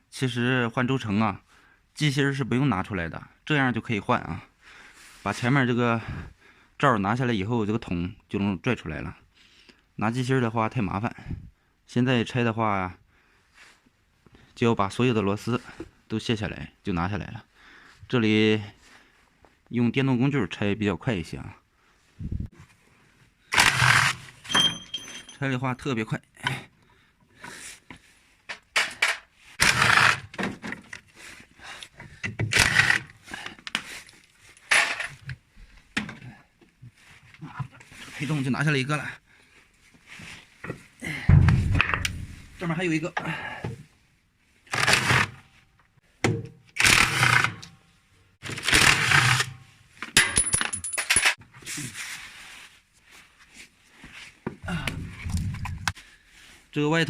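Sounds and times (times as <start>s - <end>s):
electric impact wrench running: 23.6s - 24.2s, 29.6s - 30.2s, 46.8s - 47.5s, 48.7s - 49.5s
metal parts clicking and scraping: 23.6s - 25.4s, 34.0s - 35.3s, 50.1s - 51.4s
sharp metallic clinks: 24.5s - 25.4s.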